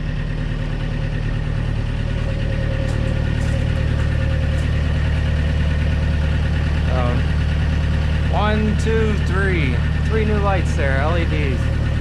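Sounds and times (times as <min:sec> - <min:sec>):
diesel engine idling: 0:00.0 - 0:12.0.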